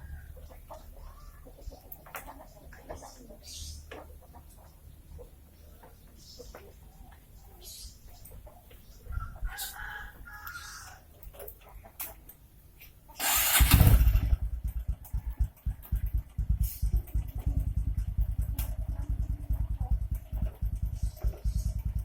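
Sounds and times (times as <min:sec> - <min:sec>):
faint scattered sounds: 0:00.0 - 0:13.3
motorcycle engine starting and idling: 0:13.2 - 0:22.0.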